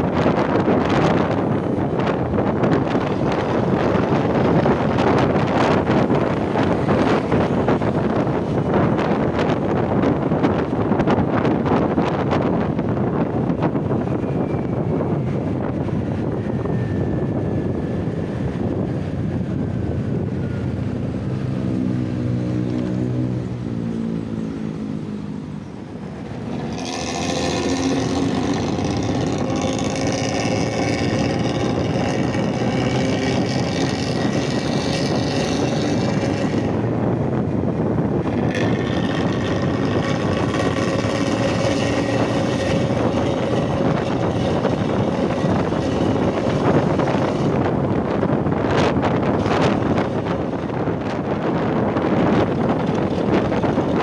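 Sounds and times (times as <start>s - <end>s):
bus engine snoring drone: 15.6s - 54.0s.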